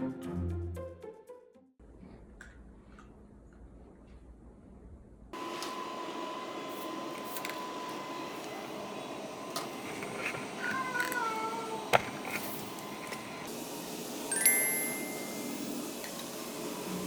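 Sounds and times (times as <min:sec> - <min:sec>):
cat meowing: 0:10.6 - 0:12.0
faint steady high tone: 0:14.3 - 0:15.7.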